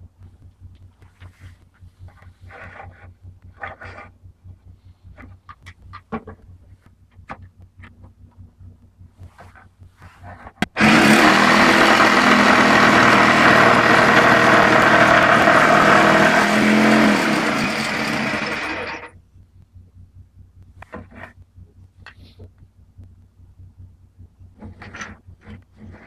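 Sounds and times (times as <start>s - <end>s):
electric jigsaw running: 10.6s - 19.1s.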